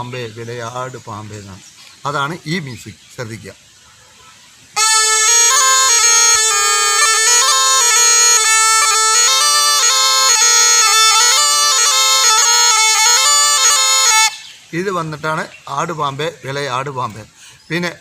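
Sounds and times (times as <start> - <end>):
gourd pipe drone and melody: 4.2 - 14.6.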